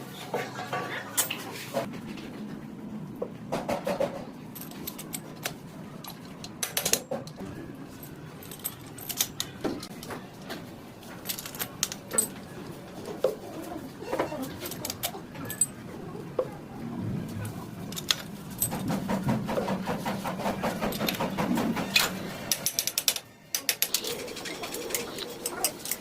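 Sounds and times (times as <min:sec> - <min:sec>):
metal tools clinking: 0:04.5 - 0:13.1, 0:14.0 - 0:15.8, 0:17.9 - 0:19.1.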